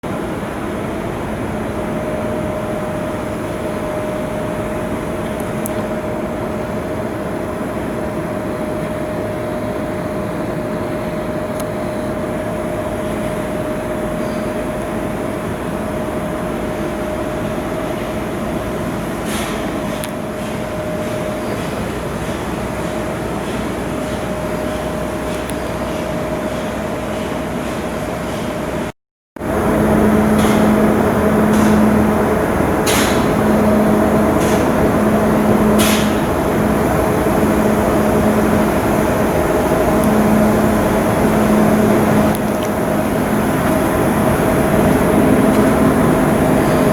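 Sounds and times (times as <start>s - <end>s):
machinery drone: 0.0s - 28.2s, 29.4s - 46.9s
mid-pitched whine: 29.4s - 46.9s.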